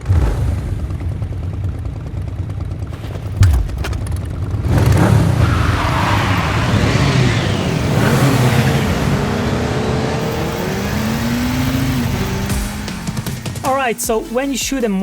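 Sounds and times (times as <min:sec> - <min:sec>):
motorcycle engine revving: 0:03.0 - 0:05.6
single impact hit: 0:03.2 - 0:04.6
motorcycle engine idling: 0:03.2 - 0:04.7.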